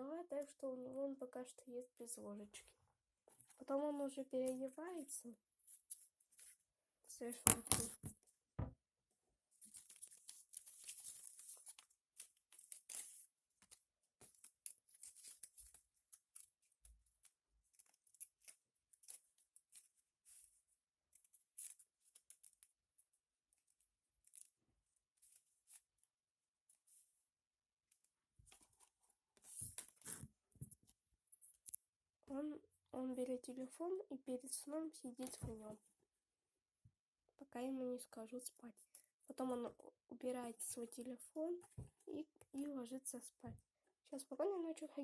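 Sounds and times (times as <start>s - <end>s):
paper rustling and crinkling: 9.5s - 26.1s, 28.4s - 31.8s.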